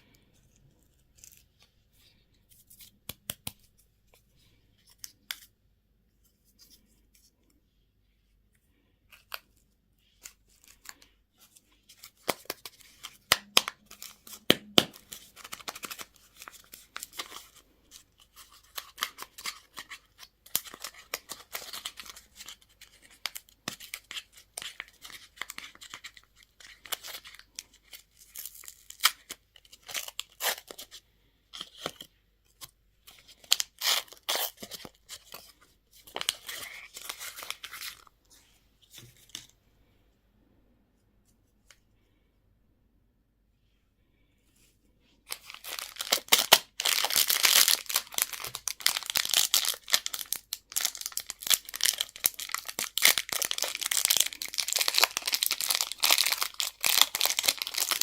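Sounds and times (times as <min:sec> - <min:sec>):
packaging tearing and crinkling: 0:45.3 - 0:58.0.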